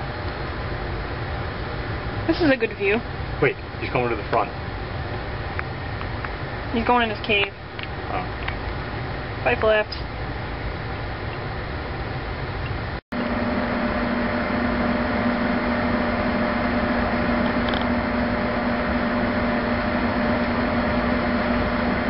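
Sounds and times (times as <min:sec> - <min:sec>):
aquarium pump humming: 0:06.6 - 0:22.0.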